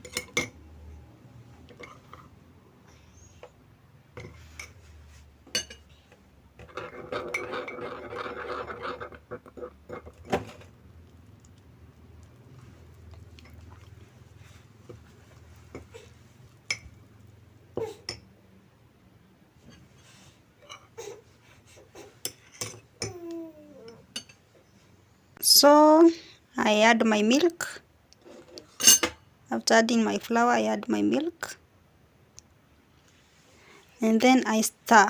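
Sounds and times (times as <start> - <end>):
spoon scraping ceramic mug: 6.6 - 10.7.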